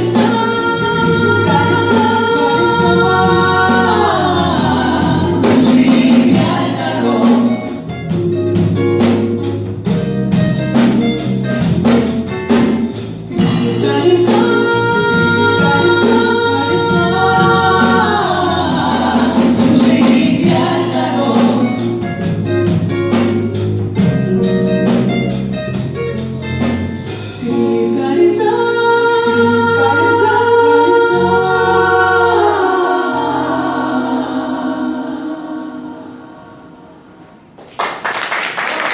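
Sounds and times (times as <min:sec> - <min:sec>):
women singing in harmony: 0:00.0 - 0:07.9, 0:13.4 - 0:22.2, 0:27.3 - 0:37.3
electric guitars: 0:00.0 - 0:32.5
bass guitar: 0:00.0 - 0:34.5
drums: 0:00.0 - 0:35.3.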